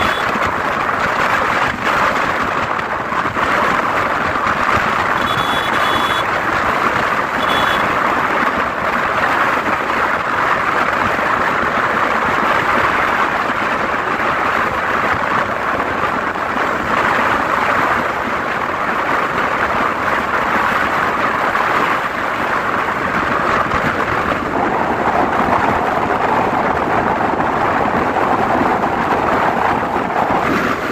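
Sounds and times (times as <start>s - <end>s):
short high beeps: 0.0s - 0.2s, 5.2s - 6.2s, 7.4s - 7.8s
moving bus running noise: 0.0s - 30.9s.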